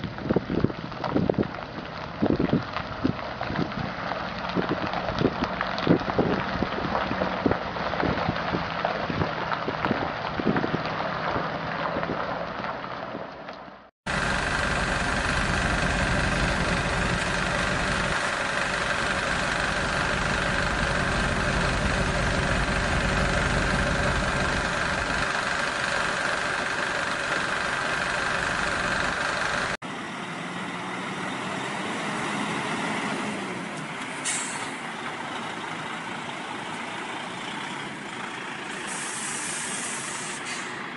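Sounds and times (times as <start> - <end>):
crackling with clicks: 0.0 - 29.8
heavy diesel engine running: 14.1 - 40.9
air brake hiss: 34.2 - 34.8, 38.8 - 40.9.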